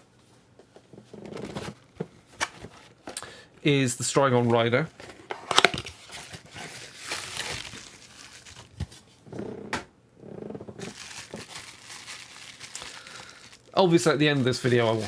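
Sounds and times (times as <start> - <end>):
packaging crinkling and rustling: 1.2 - 3.2, 4.4 - 9.2, 10.8 - 15.0.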